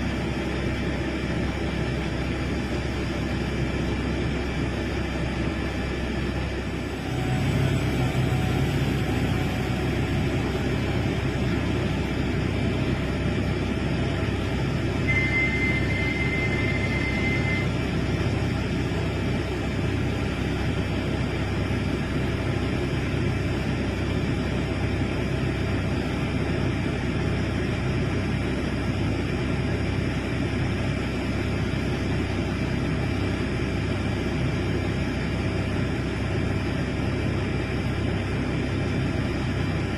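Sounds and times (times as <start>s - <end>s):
excavator diesel engine rumbling: 0.0s - 39.9s
high steady tone: 14.4s - 18.4s.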